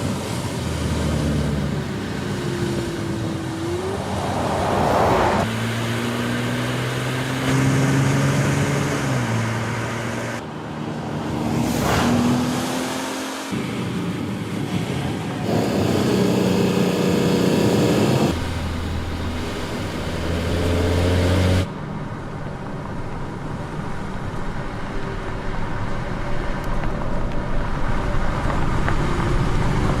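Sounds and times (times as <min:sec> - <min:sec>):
road noise: 0:00.0 - 0:30.0
car engine running: 0:15.4 - 0:21.7.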